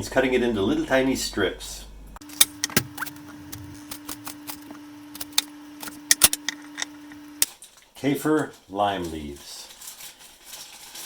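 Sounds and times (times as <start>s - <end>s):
faint steady hum: 0.0s - 7.8s.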